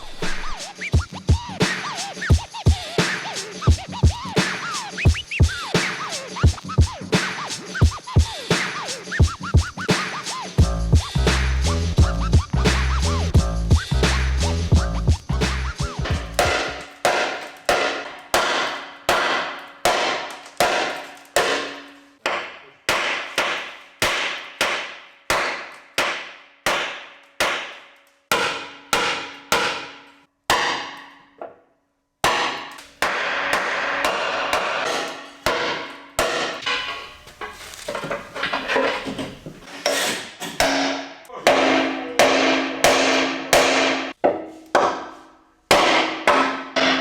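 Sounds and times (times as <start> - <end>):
hammer ringing on steel frame: 25.4 - 31.2, 40.6 - 44.2.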